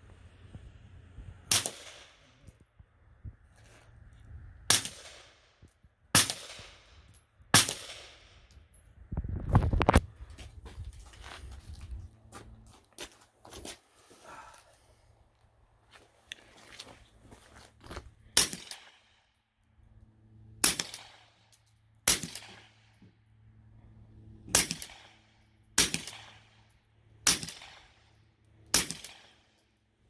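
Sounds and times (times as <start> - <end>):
suppressed pistol shots: 1.5 - 2.2, 6.2 - 6.8, 7.6 - 8.2.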